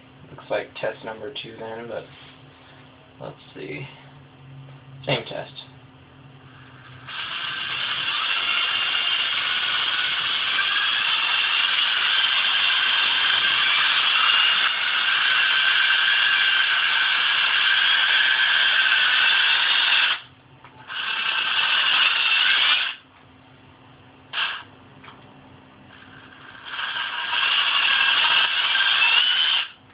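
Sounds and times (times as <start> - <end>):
cordless drill motor whirring: 26.5 - 29.8.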